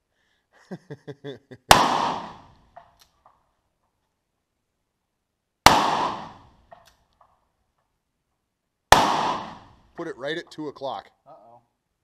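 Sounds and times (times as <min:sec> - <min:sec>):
gunshot: 0:01.7 - 0:02.6, 0:05.6 - 0:06.8, 0:08.9 - 0:09.9.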